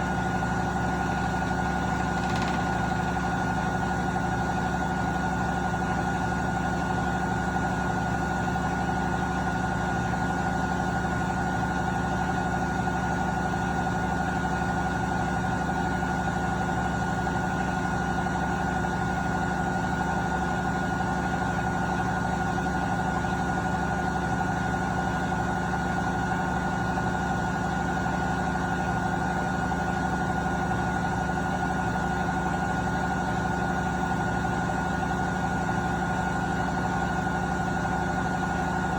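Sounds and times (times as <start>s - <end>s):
washing machine spin cycle: 0.0s - 38.9s.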